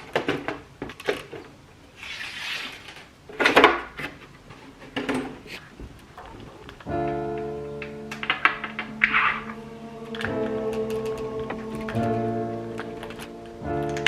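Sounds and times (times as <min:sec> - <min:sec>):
plastic rubbing: 0:02.0 - 0:07.5.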